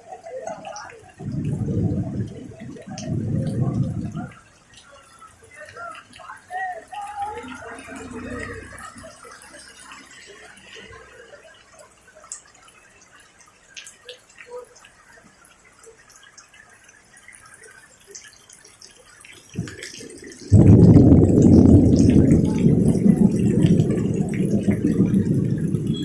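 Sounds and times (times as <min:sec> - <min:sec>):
rain pattering: 0:00.0 - 0:26.0
deep rumbling noise: 0:01.2 - 0:04.4, 0:20.5 - 0:26.0.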